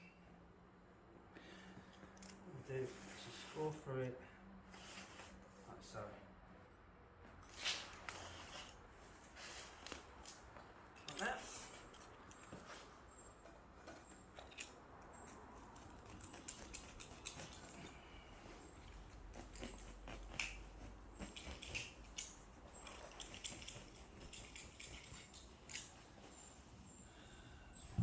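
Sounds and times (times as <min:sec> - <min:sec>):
knife cutting foam underlay: 0:07.4 - 0:10.5, 0:11.1 - 0:26.7
rustling and small clicks: 0:07.4 - 0:27.0.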